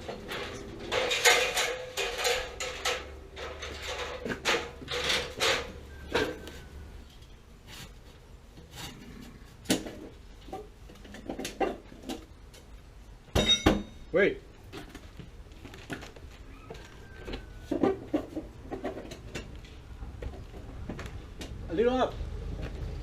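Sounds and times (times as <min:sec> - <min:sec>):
sheet metal pipe clattering: 0:00.0 - 0:06.5, 0:13.4 - 0:14.0.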